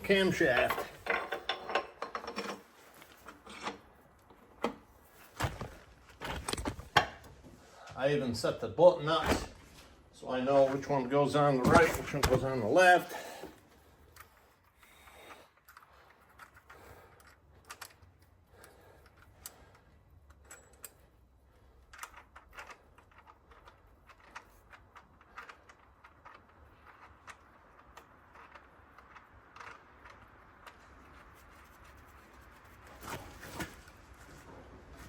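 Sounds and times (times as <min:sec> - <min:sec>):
small metal parts clicking: 0:21.8 - 0:30.8.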